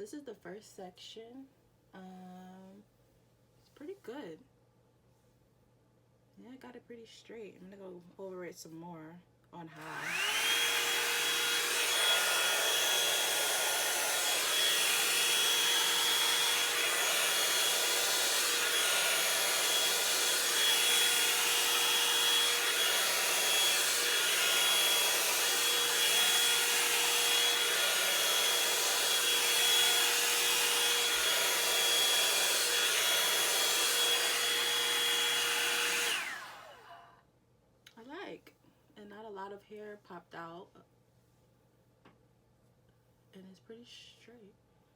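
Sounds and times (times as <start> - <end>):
hair dryer blowing: 9.8 - 37.1.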